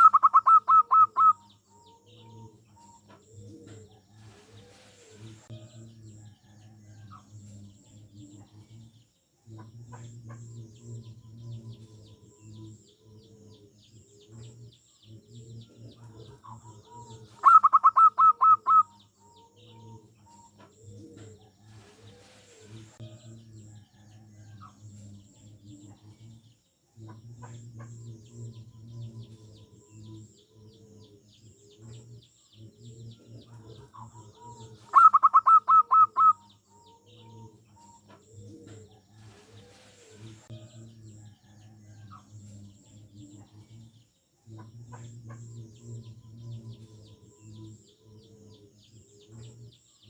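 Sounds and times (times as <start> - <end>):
dove cooing: 0.0 - 5.4, 9.6 - 23.0, 27.1 - 40.4.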